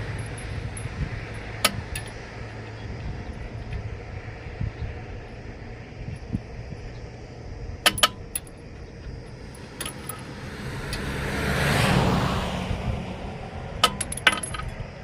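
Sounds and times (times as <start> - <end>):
sharp metallic clinks: 0.0 - 3.8, 7.8 - 11.1, 13.7 - 15.0
steady low rumble: 0.0 - 15.0
vehicle passing: 9.2 - 15.0.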